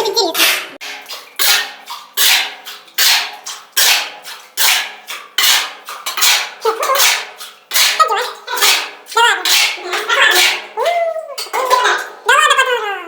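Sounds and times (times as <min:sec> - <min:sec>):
sharp loud clattering hits: 0:00.4 - 0:10.8.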